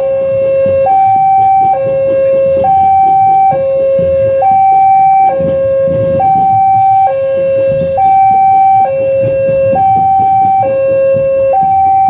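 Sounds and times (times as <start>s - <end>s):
two-tone crossing alarm: 0.0s - 12.0s.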